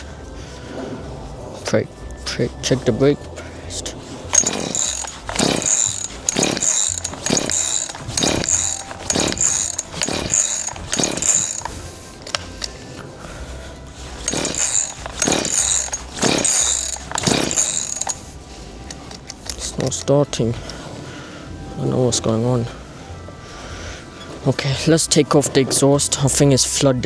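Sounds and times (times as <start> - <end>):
chainsaw recoil starter pulls: 4.3 - 12.9, 13.9 - 20.8.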